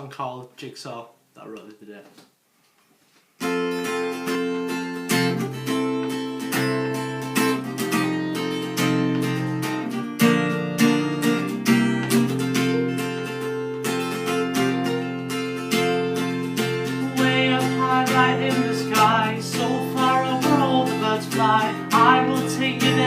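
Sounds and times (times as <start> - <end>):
acoustic guitar strumming: 3.4 - 23.0.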